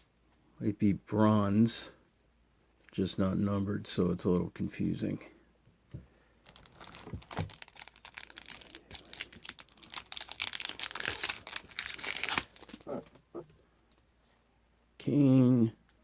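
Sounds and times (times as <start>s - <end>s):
foil wrapper tearing and crinkling: 6.5s - 13.2s.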